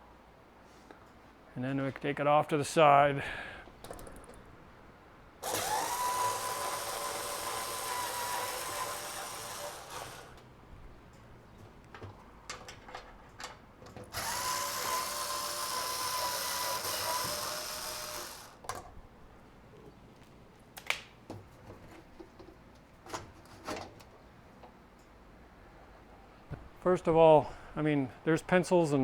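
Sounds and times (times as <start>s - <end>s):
cordless drill whirring: 5.4s - 10.4s, 14.1s - 18.6s.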